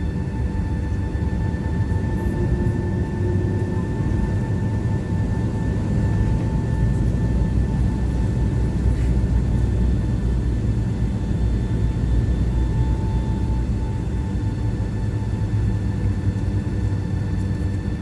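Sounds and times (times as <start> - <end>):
jet engines rumbling: 0.0 - 18.0.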